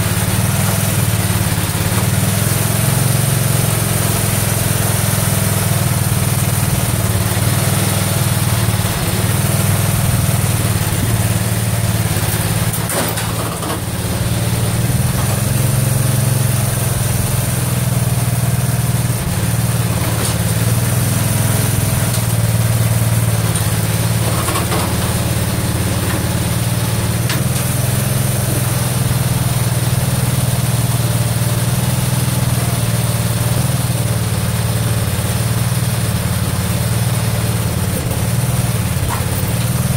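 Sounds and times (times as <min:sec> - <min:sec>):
garden tractor engine running: 0:00.0 - 0:39.9.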